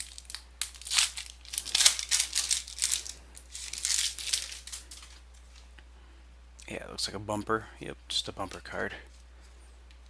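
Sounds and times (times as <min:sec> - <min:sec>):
card pack wrapper tearing and crinkling: 0:00.0 - 0:05.2.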